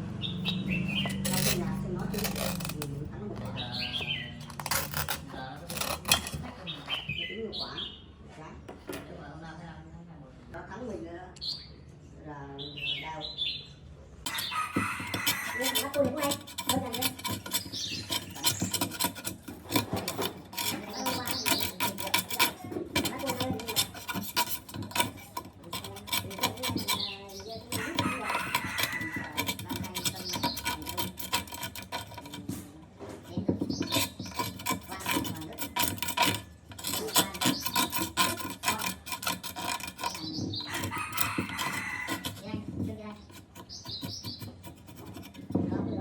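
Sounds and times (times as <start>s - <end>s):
hand filing rasping strokes: 0.0s - 7.2s, 14.3s - 45.7s
rooster crowing: 40.9s - 42.4s.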